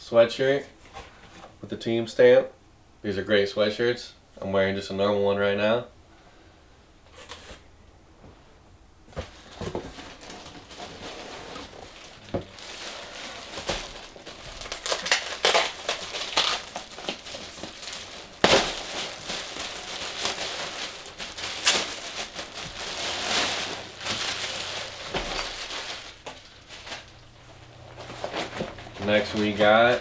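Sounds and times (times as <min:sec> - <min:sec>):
packaging crinkling and rustling: 0:09.1 - 0:30.0.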